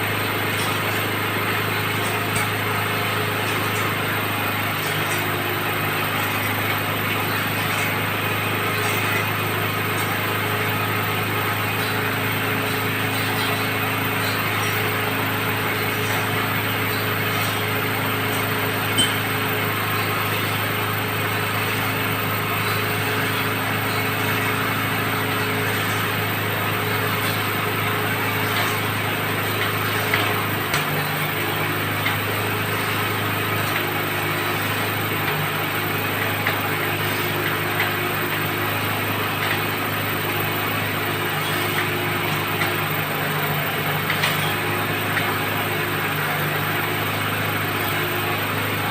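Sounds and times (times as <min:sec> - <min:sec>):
drilling rig engine running: 0:00.0 - 0:48.9.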